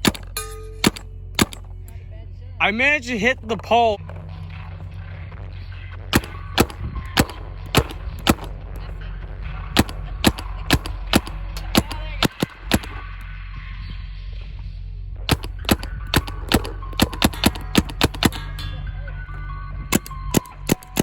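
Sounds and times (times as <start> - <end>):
paintball marker firing: 0.0 - 1.8, 6.2 - 8.9, 9.8 - 13.2, 15.3 - 18.7, 19.9 - 21.0
steady low hum: 0.0 - 21.0.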